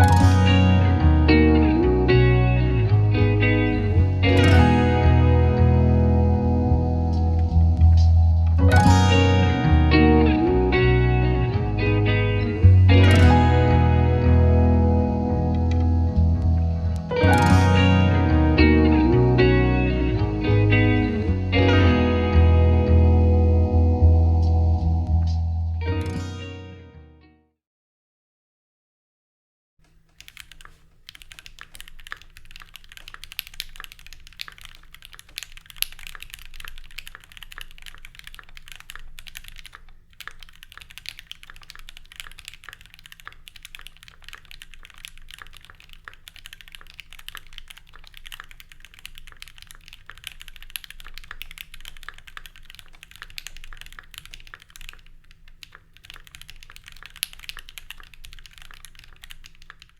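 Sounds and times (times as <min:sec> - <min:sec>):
fast typing on mechanical keyboard: 0:29.9 - 0:59.9.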